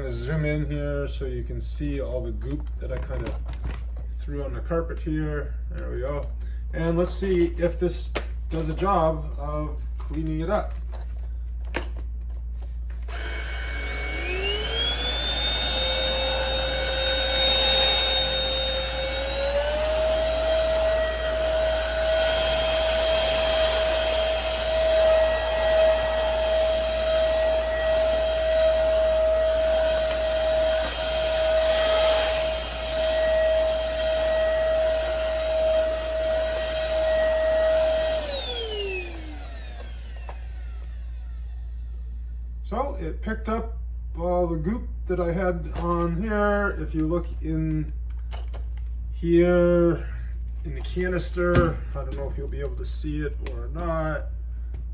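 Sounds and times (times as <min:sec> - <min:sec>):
stick vacuum motor whining: 0:13.0 - 0:42.1.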